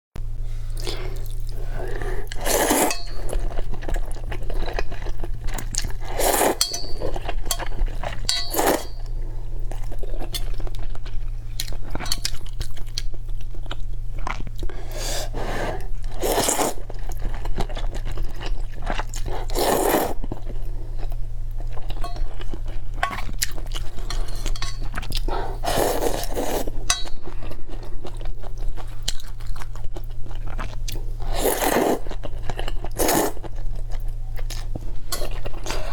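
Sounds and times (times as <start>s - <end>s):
steady low hum: 0.2s - 35.9s
person chewing seafood: 0.8s - 35.9s
dishes and utensils clinking: 2.6s - 3.6s, 6.2s - 9.1s, 21.9s - 25.2s.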